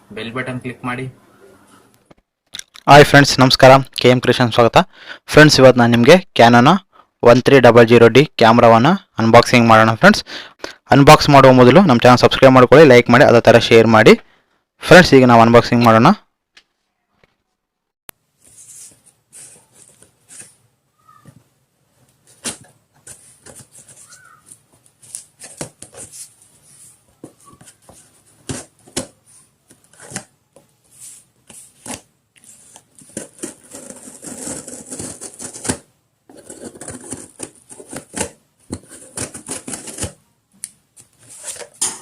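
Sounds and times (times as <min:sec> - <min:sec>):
packaging rustling: 0:22.0 - 0:30.3, 0:31.0 - 0:40.2.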